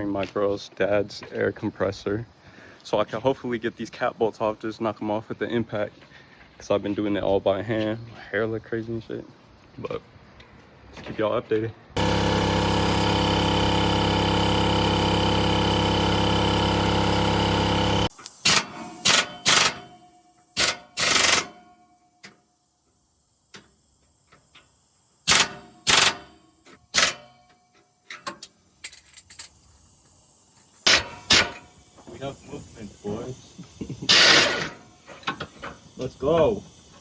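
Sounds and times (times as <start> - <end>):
pneumatic impact wrench bursts: 12.0 - 22.5, 23.5 - 37.0.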